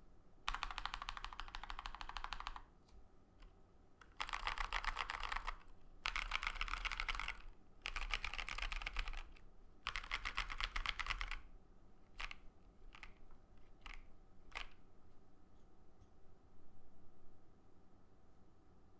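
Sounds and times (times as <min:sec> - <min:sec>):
mechanical keyboard keystrokes: 0:00.5 - 0:02.7, 0:03.4 - 0:11.4, 0:12.2 - 0:14.8.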